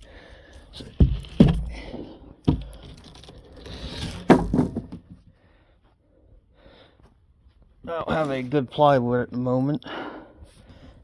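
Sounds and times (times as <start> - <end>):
board scraping on wood: 0.8 - 5.2.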